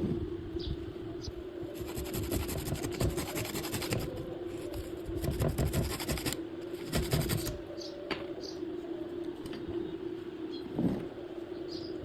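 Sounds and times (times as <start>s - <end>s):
steady low hum: 0.0s - 12.0s
tool scraping wood: 1.8s - 7.6s.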